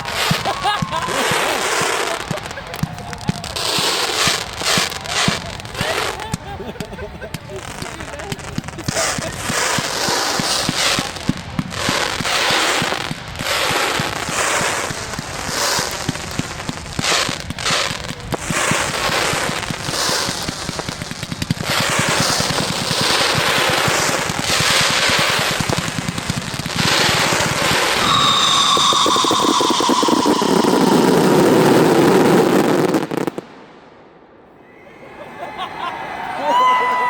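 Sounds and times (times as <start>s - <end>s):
fireworks shell bursts and crackle: 11.9s - 33.5s.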